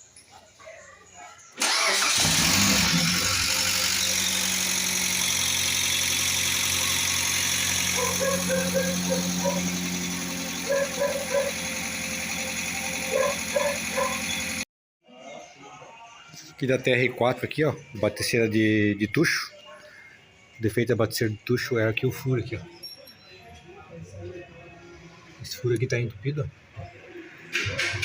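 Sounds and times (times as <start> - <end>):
engine idling: 1.6 - 14.6.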